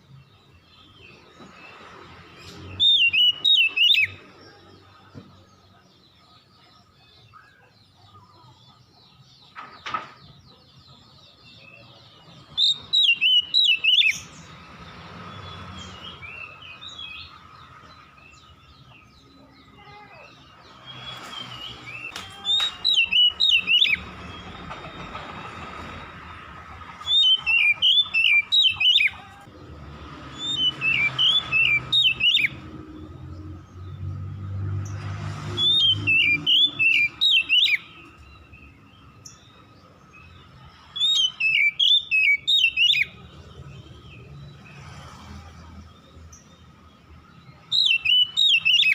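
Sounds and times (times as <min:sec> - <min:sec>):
songbird singing sharp high notes: 0:02.5 - 0:04.4, 0:12.4 - 0:14.5, 0:20.2 - 0:24.5, 0:27.0 - 0:29.2, 0:30.4 - 0:32.6, 0:35.5 - 0:39.4, 0:47.6 - 0:48.9.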